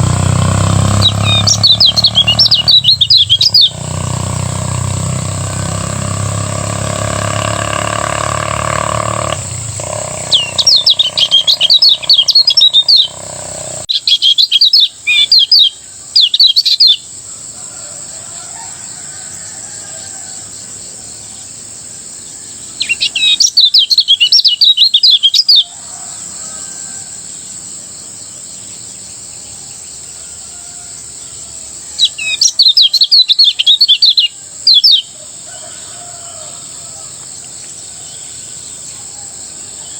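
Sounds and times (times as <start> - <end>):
bird singing chattering trills: 0.0 - 17.2, 22.2 - 25.8, 31.9 - 35.2.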